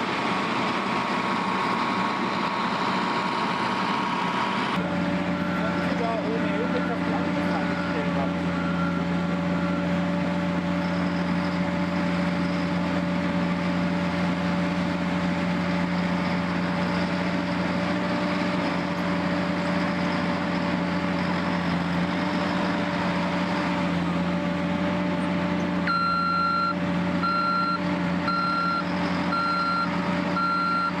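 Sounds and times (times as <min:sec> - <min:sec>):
heavy machine engine running: 0:00.0 - 0:31.0
reversing alarm beeps: 0:05.3 - 0:10.0, 0:25.9 - 0:31.0.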